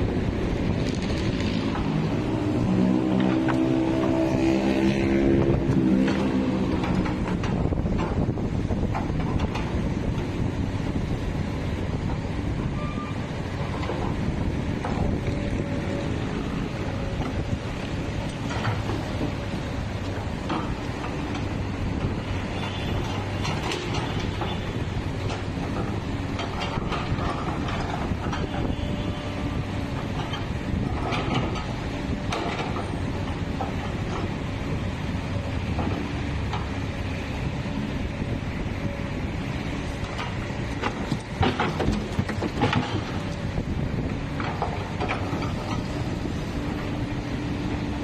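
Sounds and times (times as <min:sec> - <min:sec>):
metallic clanks and rattles: 0:40.0 - 0:43.4.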